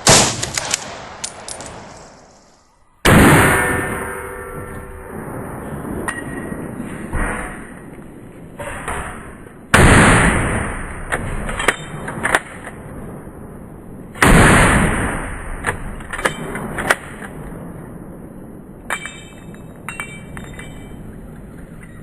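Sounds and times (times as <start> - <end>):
rifle shots echoing: 0.0 - 2.0, 9.5 - 19.9.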